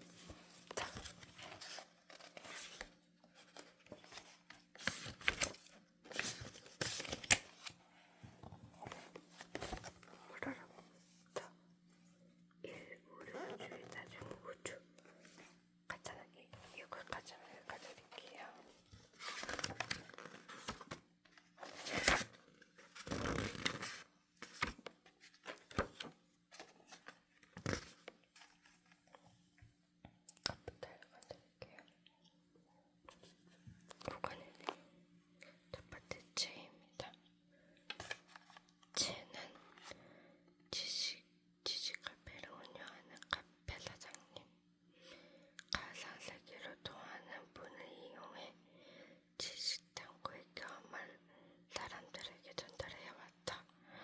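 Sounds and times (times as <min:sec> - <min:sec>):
book pages turning: 0:00.0 - 0:07.8, 0:08.4 - 0:10.2, 0:19.0 - 0:29.0, 0:37.9 - 0:38.8.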